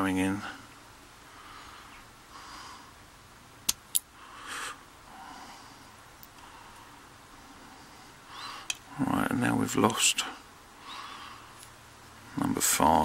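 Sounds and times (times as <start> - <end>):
person breathing through nose: 4.2 - 8.8.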